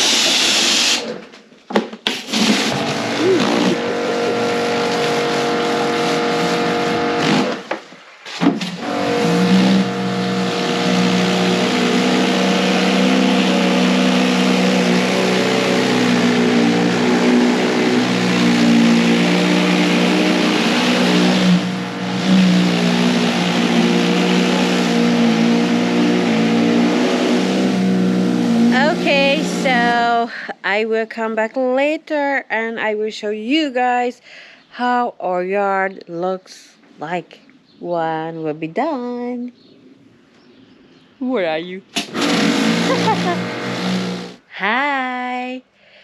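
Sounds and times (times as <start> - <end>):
pressure washer spraying: 0.0 - 1.1, 2.3 - 7.7, 8.6 - 30.0, 42.0 - 44.4.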